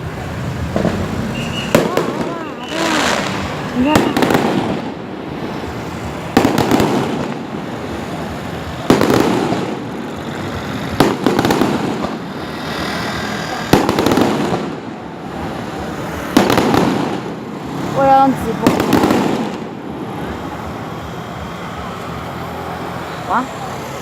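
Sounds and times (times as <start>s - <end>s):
fireworks bangs: 0.0s - 22.2s
fireworks crackling: 0.0s - 24.0s.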